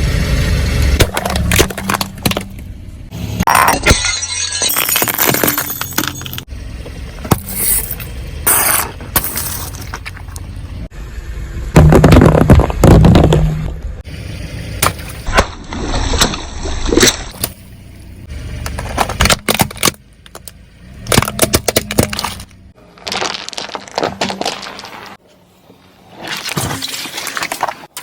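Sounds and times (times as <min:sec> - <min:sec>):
objects crunching under car tyres: 0:01.0 - 0:02.7, 0:04.4 - 0:10.9, 0:11.8 - 0:13.9, 0:18.5 - 0:28.0.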